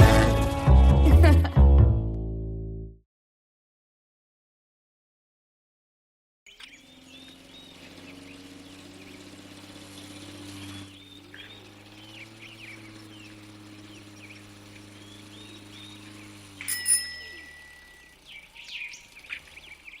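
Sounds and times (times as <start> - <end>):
small birds chirping: 6.5 - 20.0
ringing tone: 16.6 - 18.2.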